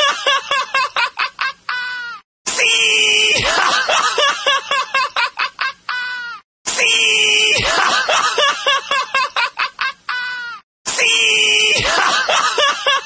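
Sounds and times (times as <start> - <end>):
high-pitched cackling laugh: 0.0 - 2.2, 3.2 - 6.4, 7.4 - 10.6, 11.6 - 13.0.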